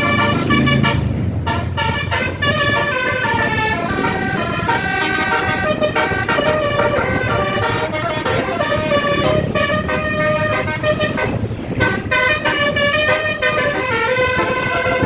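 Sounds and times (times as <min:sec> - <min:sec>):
musical air horn: 0:00.0 - 0:15.0.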